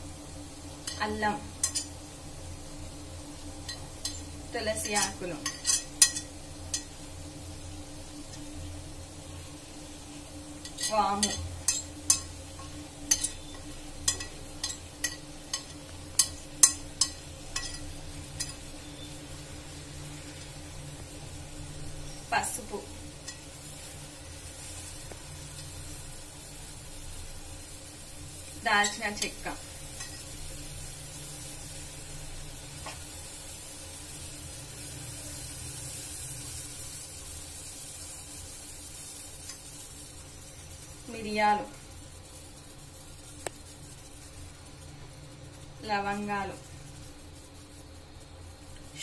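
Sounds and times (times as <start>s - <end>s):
pot boiling with bubbling hiss: 0.0s - 49.0s
spoon clinking against pot: 14.1s - 18.6s.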